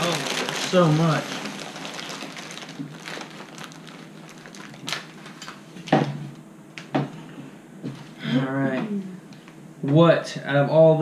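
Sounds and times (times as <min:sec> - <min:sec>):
plastic wrappers crinkling: 0:00.0 - 0:06.0.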